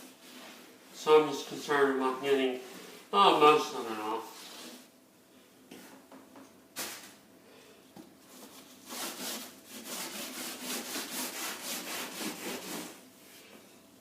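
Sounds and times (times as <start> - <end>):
steel wool scrubbing wood: 8.9 - 13.0.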